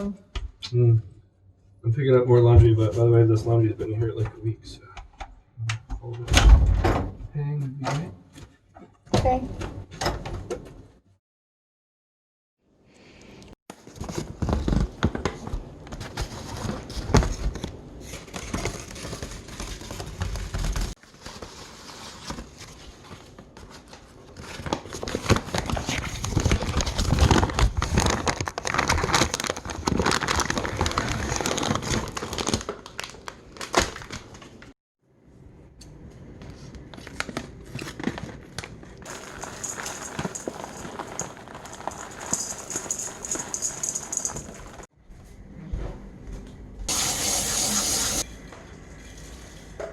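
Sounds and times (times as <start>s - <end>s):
crinkling and rustling: 13.7s - 34.7s, 36.4s - 44.9s.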